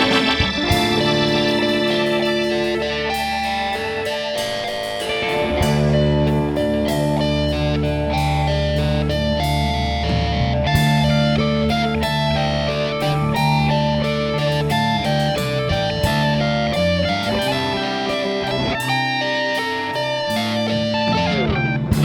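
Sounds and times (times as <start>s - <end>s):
electric guitar lead notes: 0.0s - 22.0s
live rock band playing: 0.0s - 22.0s.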